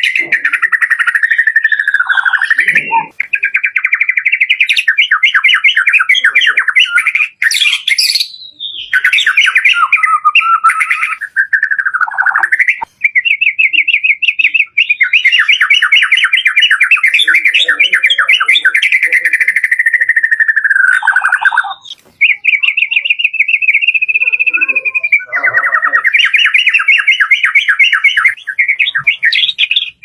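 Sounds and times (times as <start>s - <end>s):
bird singing trilled song: 0.0s - 30.0s.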